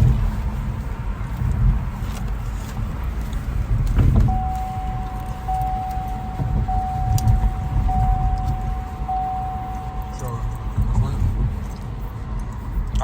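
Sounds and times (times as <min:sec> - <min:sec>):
car engine rumble: 0:00.0 - 0:13.0
car warning chime: 0:04.2 - 0:11.7.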